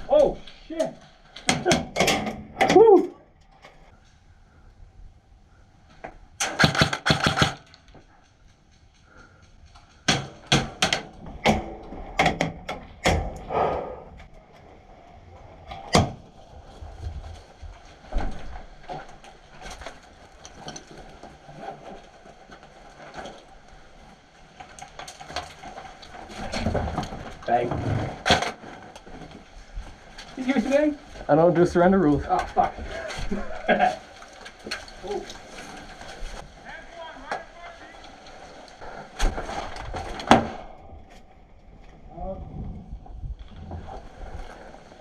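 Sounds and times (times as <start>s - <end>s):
airsoft rifle shots: 6.4s - 7.8s.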